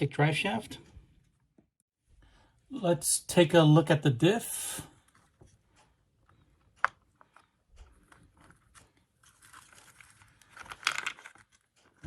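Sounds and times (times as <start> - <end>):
plastic parts being handled: 5.0 - 12.0
rustling and scraping: 5.0 - 12.0.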